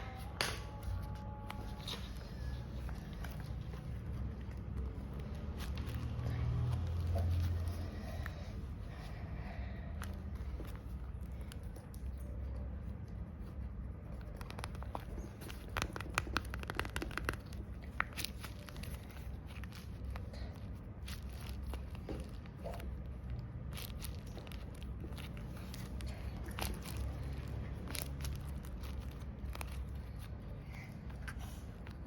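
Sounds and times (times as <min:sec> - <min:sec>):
steady low hum: 0:00.0 - 0:32.0
paper crinkling and tearing: 0:10.4 - 0:32.0.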